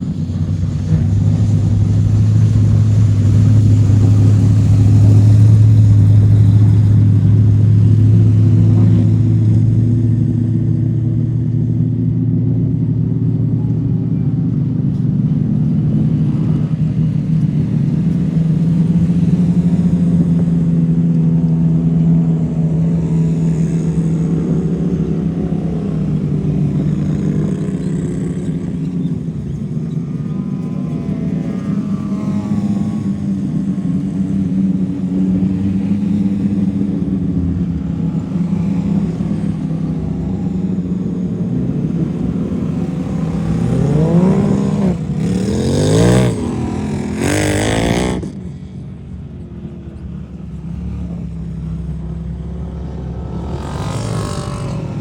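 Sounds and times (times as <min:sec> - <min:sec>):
off-road vehicle engine running: 0:00.0 - 0:55.0.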